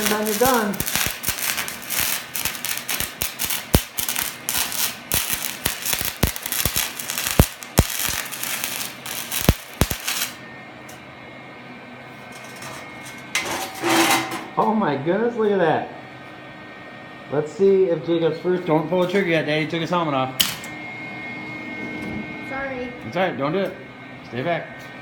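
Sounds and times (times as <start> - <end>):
welding arc crackling and popping: 0.0 - 10.4.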